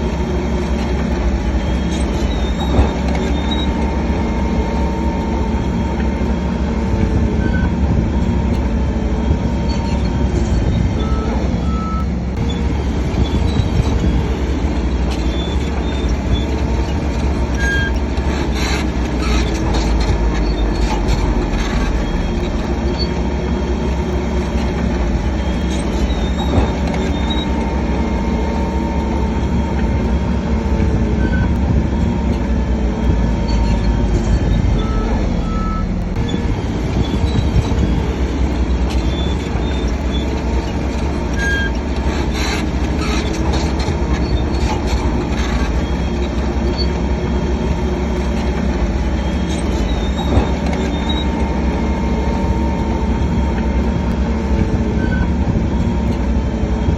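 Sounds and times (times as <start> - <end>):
diesel engines running under load: 0.0 - 56.9
high squeaks: 1.4 - 4.4, 24.5 - 29.7, 33.3 - 47.1, 48.2 - 52.0.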